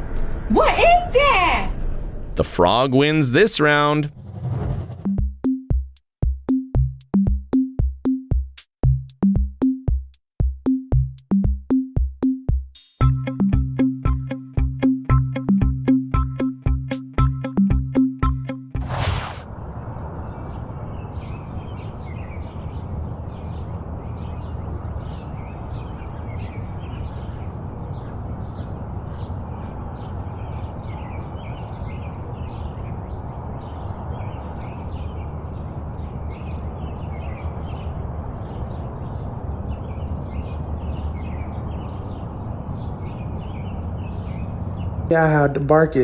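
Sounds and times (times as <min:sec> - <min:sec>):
steady low rumbling: 0:04.0 - 0:05.2.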